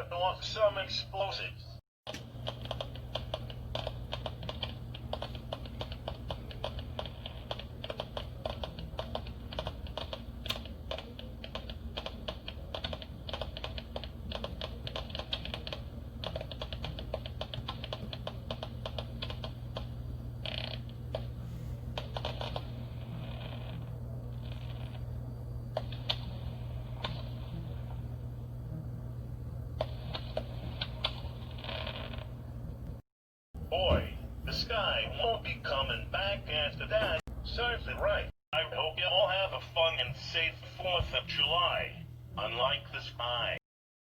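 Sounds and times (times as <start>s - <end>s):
steady low hum: 0.0s - 33.0s, 33.6s - 43.6s
rapid clicking and crackling: 2.1s - 21.3s.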